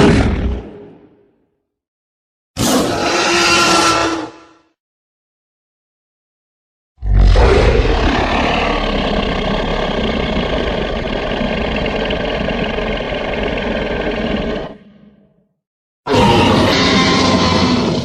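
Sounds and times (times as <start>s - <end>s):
dinosaur rumbling growl: 7.0s - 15.4s.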